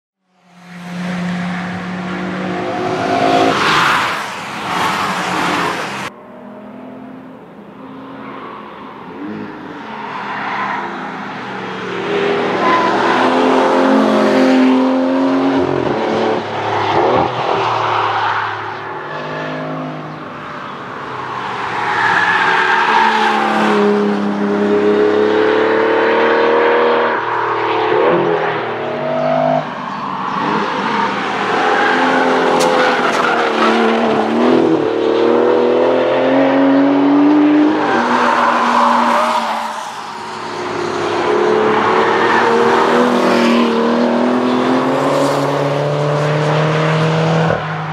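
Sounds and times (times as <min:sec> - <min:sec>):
car engine at full throttle: 0:40.3 - 0:47.9.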